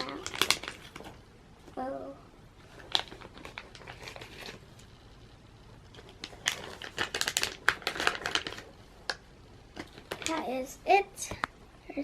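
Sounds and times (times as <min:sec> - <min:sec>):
plastic bag crinkling: 0:00.0 - 0:01.2, 0:02.6 - 0:04.9, 0:05.9 - 0:10.6.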